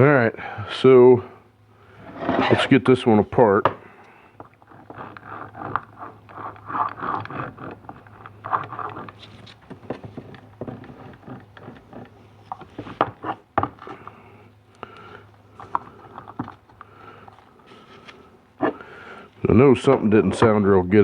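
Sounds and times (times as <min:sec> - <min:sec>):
steady low hum: 0:00.0 - 0:21.0
metal clicks knocks and scrapes: 0:02.0 - 0:02.8, 0:04.4 - 0:14.1.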